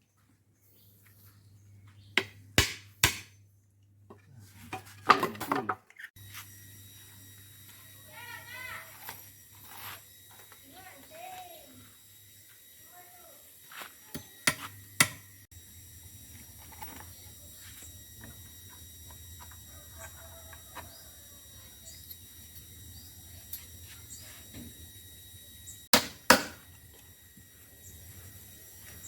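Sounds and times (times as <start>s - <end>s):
sharp knocks on wood: 2.2s - 3.3s, 25.9s - 26.6s
steady low hum: 6.2s - 29.0s.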